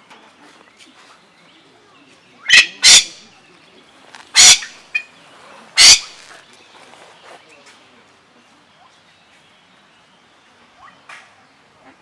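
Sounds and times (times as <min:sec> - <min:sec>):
bird squawking harshly: 0:02.5 - 0:03.3, 0:04.4 - 0:05.1, 0:05.8 - 0:06.2.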